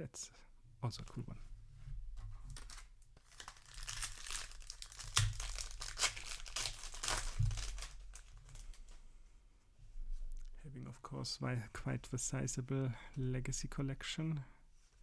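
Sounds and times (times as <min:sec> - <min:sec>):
plastic wrapper crinkling and tearing: 0:02.5 - 0:09.0.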